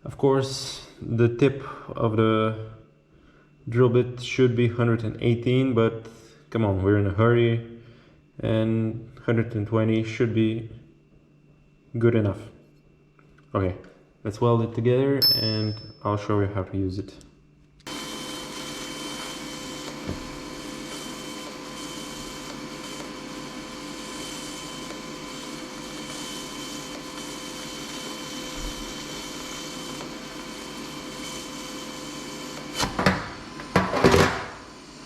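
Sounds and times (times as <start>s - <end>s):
welding arc hissing: 17.9s - 32.8s.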